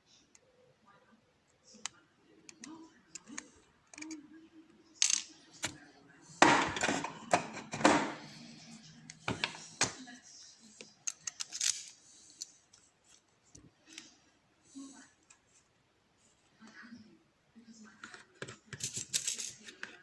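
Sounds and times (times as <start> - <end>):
lock parts clicking and rattling: 11.0 - 12.5.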